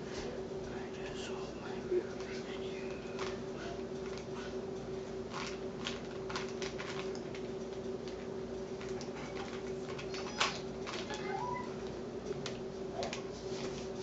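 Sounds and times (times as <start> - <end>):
steady background hum: 0.0 - 14.0.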